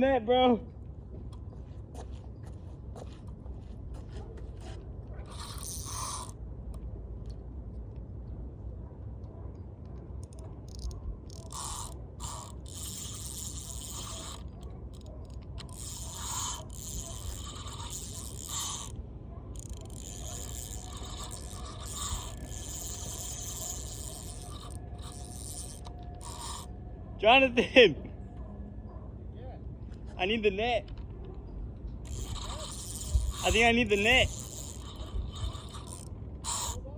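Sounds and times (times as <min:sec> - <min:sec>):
fishing reel ratcheting whir: 0:05.1 - 0:06.4, 0:10.2 - 0:26.8, 0:32.0 - 0:36.8.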